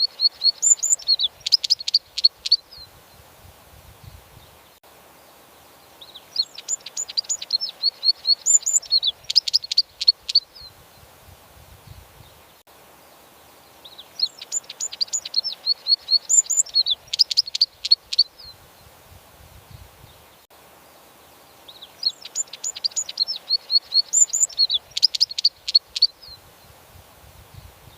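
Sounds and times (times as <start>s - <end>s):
wagtail twittering chirps: 0.0s - 2.9s, 6.0s - 10.7s, 13.8s - 18.6s, 21.6s - 26.4s.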